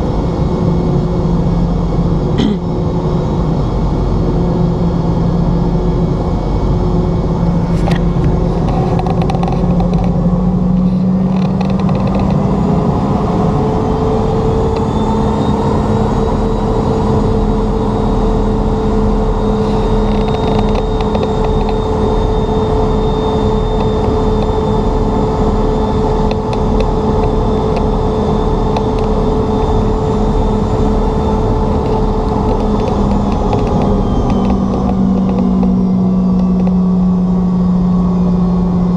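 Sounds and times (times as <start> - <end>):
airliner cabin engine rush: 0.0 - 38.9
faint high whine: 13.8 - 38.9.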